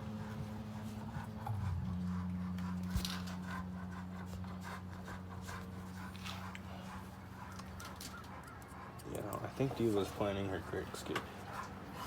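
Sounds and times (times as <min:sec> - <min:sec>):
low hum: 0:00.0 - 0:07.6
dog panting: 0:00.0 - 0:12.0.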